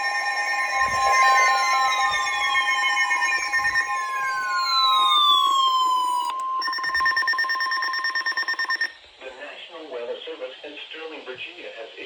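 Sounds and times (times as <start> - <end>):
fast pulsing beep: 0.0 - 9.0
high alarm tone with falling sweeps: 0.0 - 9.0.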